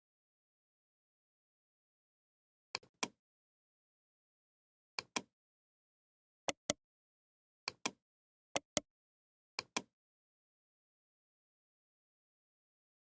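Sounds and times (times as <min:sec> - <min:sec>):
computer mouse double-clicking: 0:06.5 - 0:06.8.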